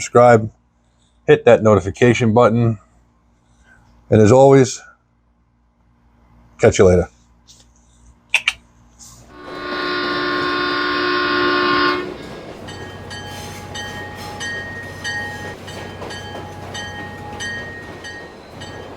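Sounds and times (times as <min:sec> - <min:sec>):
train horn chord: 0:09.3 - 0:18.0
train running with clicks: 0:09.3 - 0:18.9.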